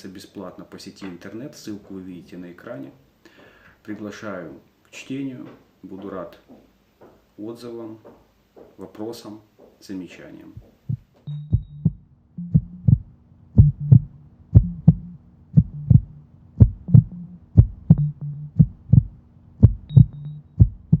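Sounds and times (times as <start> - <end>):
heartbeat through stethoscope: 10.6 - 21.0
low steady hum: 10.6 - 21.0.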